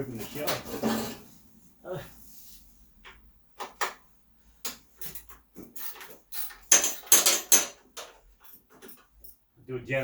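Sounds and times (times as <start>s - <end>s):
metal tools clinking: 5.0s - 9.4s.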